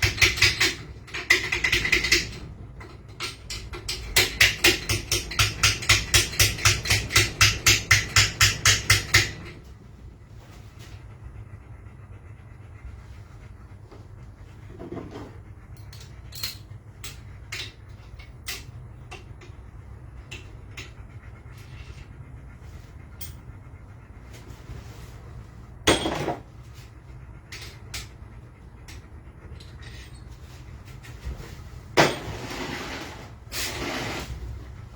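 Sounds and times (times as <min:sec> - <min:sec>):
steady low rumble: 0:09.4 - 0:32.4
metal engine parts clinking: 0:25.8 - 0:26.5, 0:28.8 - 0:30.7.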